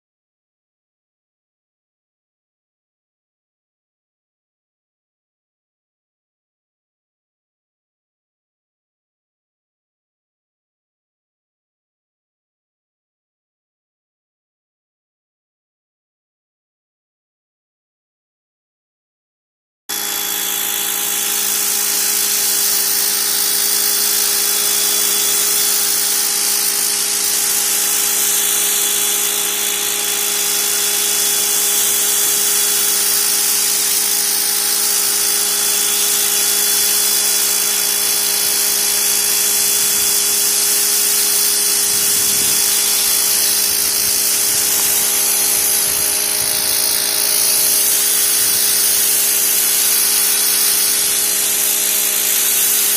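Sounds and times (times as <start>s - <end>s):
pressure washer motor hum: 19.9s - 52.9s
high-pressure water spray hiss: 20.0s - 52.9s.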